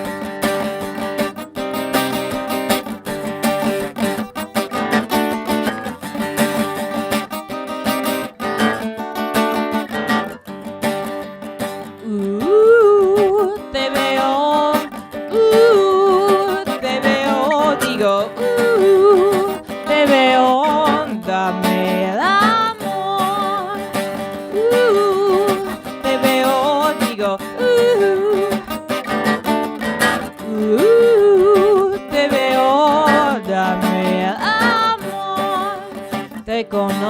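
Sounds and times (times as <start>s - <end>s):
strummed acoustic guitar: 0.0s - 37.0s
woman singing: 11.6s - 37.0s.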